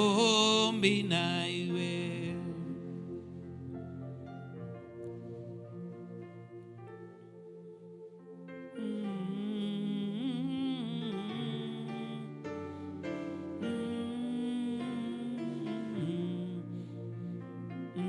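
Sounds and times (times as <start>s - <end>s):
sustained chords: 0.0s - 18.0s
person humming: 13.6s - 17.0s.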